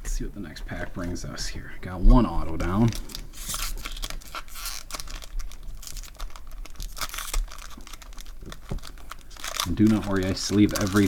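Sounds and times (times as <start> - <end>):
foil wrapper tearing and crinkling: 2.8 - 11.0.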